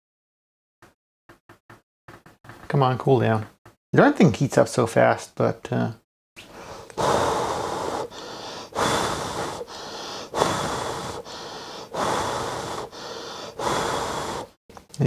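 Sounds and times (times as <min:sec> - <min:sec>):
in-breaths: 0:06.4 - 0:14.6
person blowing puffs of breath: 0:06.4 - 0:14.6.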